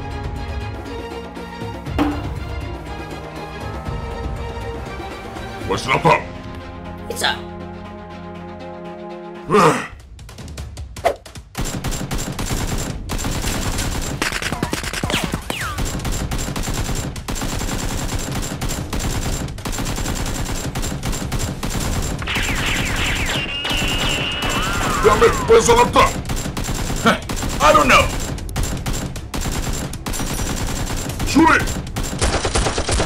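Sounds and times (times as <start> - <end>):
rapid automatic gunfire: 11.3 - 33.0.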